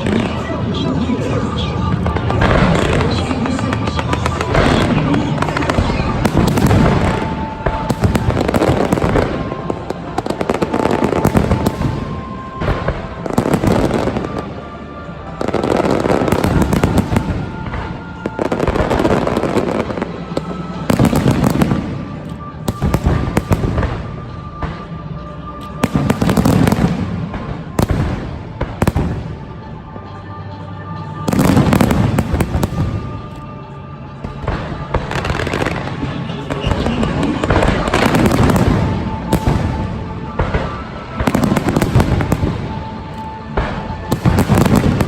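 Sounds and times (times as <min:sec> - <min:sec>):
fireworks bangs and crackling: 0:00.0 - 0:45.0
music playing: 0:00.0 - 0:45.0.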